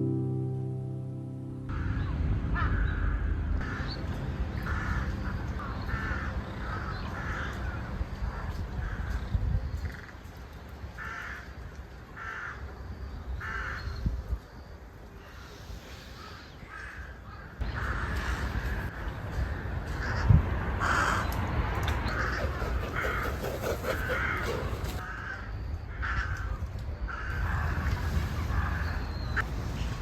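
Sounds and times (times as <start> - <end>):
low rushing noise: 0.0 - 8.4
crows cawing: 1.7 - 4.0, 4.6 - 9.2, 11.0 - 11.6, 12.2 - 12.6, 16.7 - 18.9, 19.5 - 21.3, 22.1 - 27.7.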